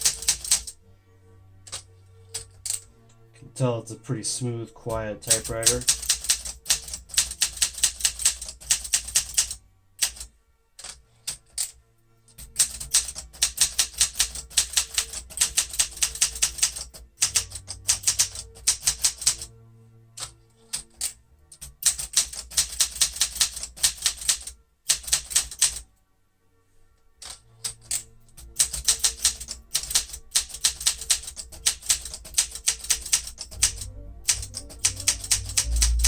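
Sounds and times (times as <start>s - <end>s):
typewriter key strikes: 0.0s - 0.7s, 5.3s - 11.7s, 12.4s - 19.5s, 20.2s - 25.8s, 27.2s - 36.0s.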